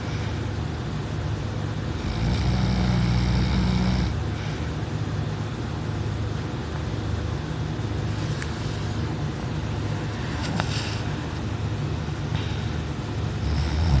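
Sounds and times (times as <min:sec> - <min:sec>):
person snoring: 0:02.0 - 0:04.2, 0:13.4 - 0:14.0.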